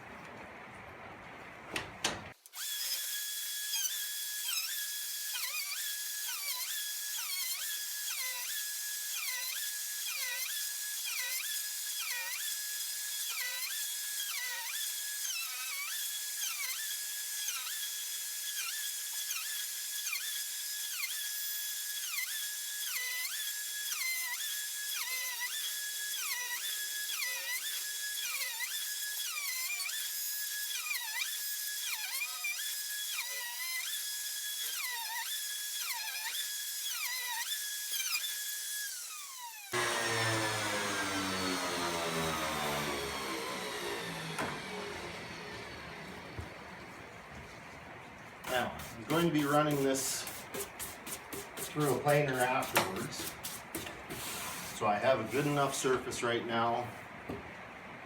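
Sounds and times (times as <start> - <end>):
router cutting wood whining: 2.6 - 47.3.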